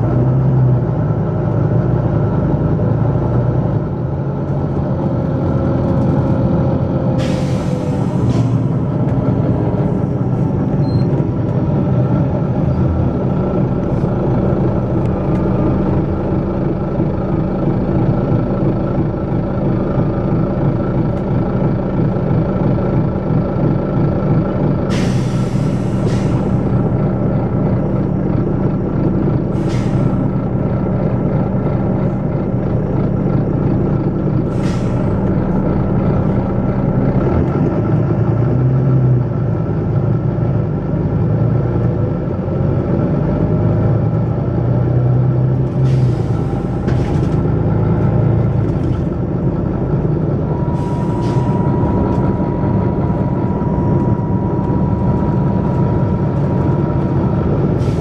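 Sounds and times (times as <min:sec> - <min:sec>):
bus diesel engine working hard: 0:00.0 - 0:58.0
air brakes hissing: 0:07.1 - 0:11.2, 0:24.9 - 0:27.0, 0:29.5 - 0:30.5, 0:34.4 - 0:36.4, 0:45.7 - 0:47.4, 0:50.1 - 0:58.0
thin steady whine: 0:50.3 - 0:57.8.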